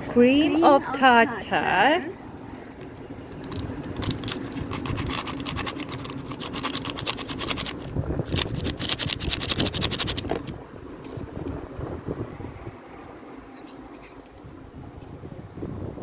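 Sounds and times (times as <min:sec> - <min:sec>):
utensil stirring dry powder: 0:04.2 - 0:10.3.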